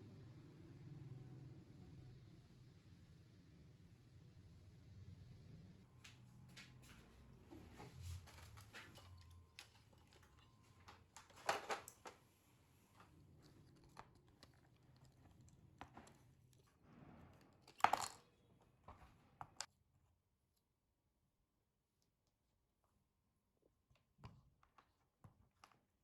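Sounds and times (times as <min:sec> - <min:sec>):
small parts and tools clicking: 0:13.0 - 0:16.7.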